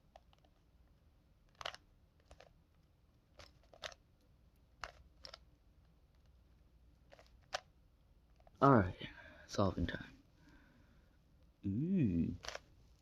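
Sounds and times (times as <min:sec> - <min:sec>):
puzzle cube plastic clicks: 0:00.0 - 0:00.6, 0:01.4 - 0:04.0, 0:04.8 - 0:05.5, 0:07.1 - 0:07.7, 0:12.4 - 0:12.7.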